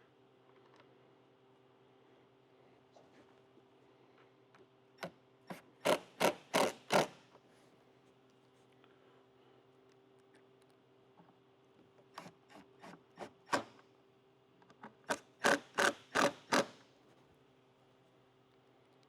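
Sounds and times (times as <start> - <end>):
faint steady hum: 0.0 - 5.9, 7.3 - 13.2, 16.9 - 19.0
hand tool ratcheting and scraping: 5.8 - 7.2, 15.1 - 16.8.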